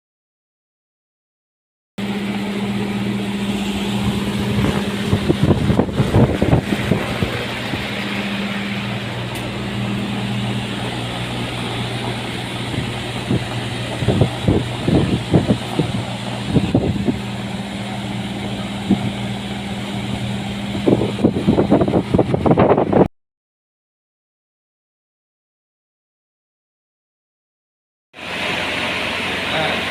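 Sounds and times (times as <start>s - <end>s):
machine humming: 2.0s - 23.1s, 28.2s - 29.9s.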